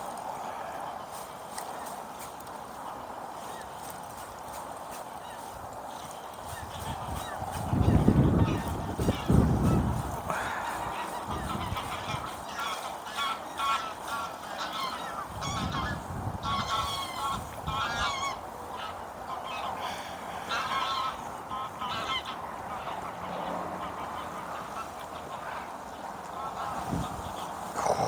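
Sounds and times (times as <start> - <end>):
geese honking: 6.0 - 28.0.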